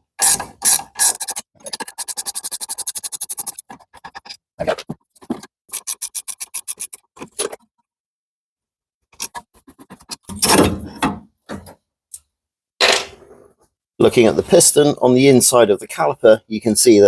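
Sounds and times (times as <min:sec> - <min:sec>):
ratchet spanner clicking: 0:00.2 - 0:03.6, 0:05.7 - 0:07.0.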